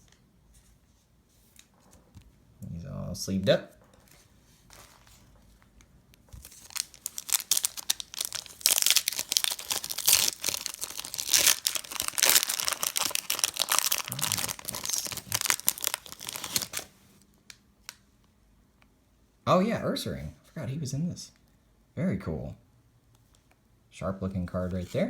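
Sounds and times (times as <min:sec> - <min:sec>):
foil wrapper crinkling: 0:04.6 - 0:18.0.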